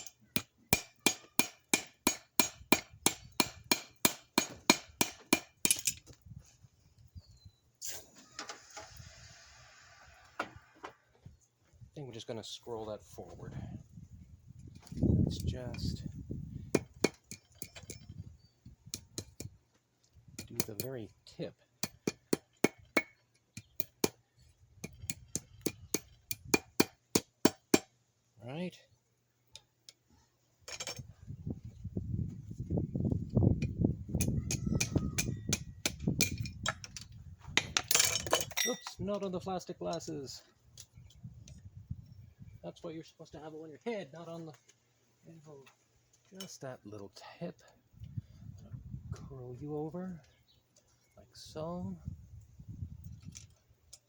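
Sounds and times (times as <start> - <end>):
hammer striking steel on anvil: 0.0 - 5.9.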